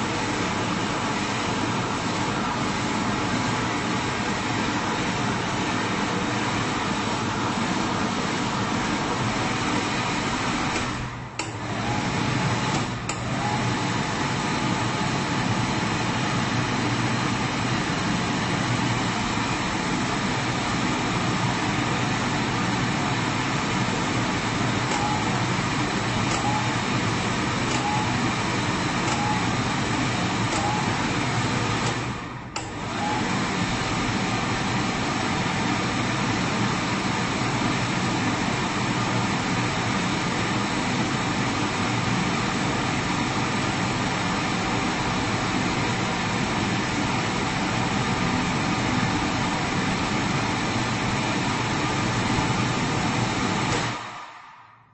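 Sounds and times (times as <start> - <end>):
hand dryer blowing air: 0.0 - 54.9.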